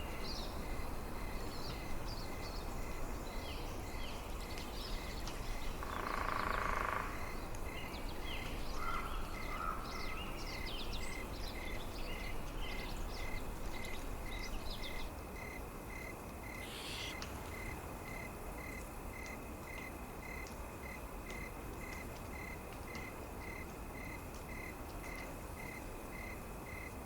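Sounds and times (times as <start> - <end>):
cricket chirping: 0.0 - 27.0
low background hiss: 0.0 - 27.0
rustling hiss: 10.4 - 26.6
birds calling: 16.6 - 17.2.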